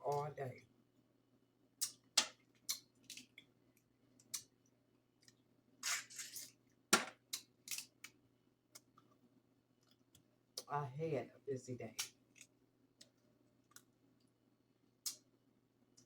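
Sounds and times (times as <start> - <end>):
seafood cracking while eaten: 1.8 - 3.5.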